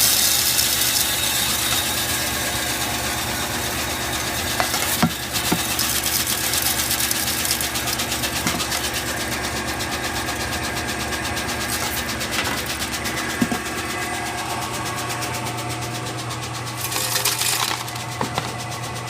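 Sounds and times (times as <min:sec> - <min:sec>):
fast high ticking: 0:00.0 - 0:09.4
machine hum: 0:00.0 - 0:19.0.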